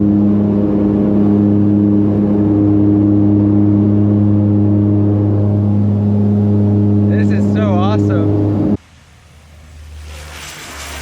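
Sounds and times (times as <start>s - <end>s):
engine droning steadily: 0.0s - 11.0s.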